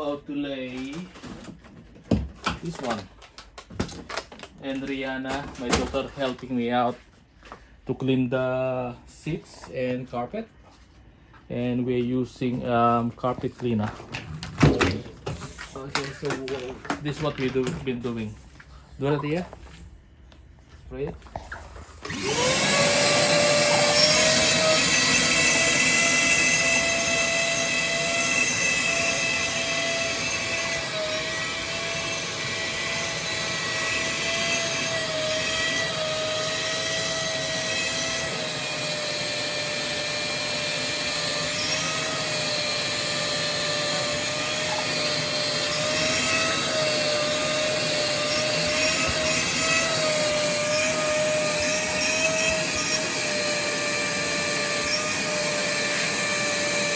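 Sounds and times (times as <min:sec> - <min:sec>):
vacuum motor whining: 0:21.9 - 0:56.9.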